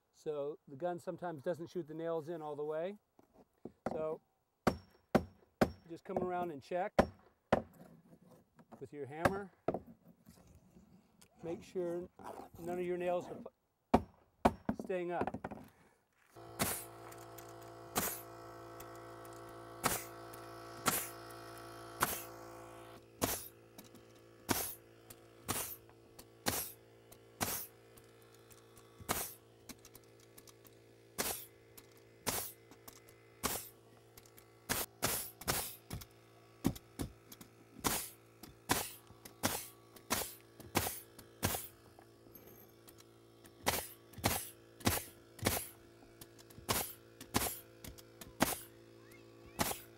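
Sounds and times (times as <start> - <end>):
nail gun firing: 16.4 - 41.9, 42.8 - 48.8, 49.5 - 49.9
steady hum: 16.4 - 49.9.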